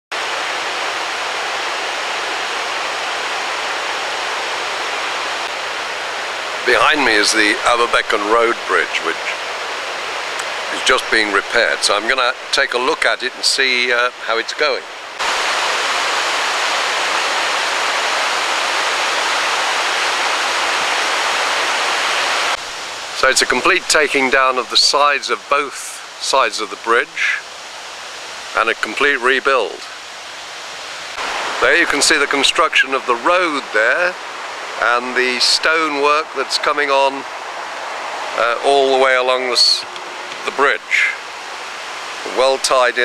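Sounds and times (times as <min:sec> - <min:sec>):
river water rushing: 0:00.1 - 0:43.0.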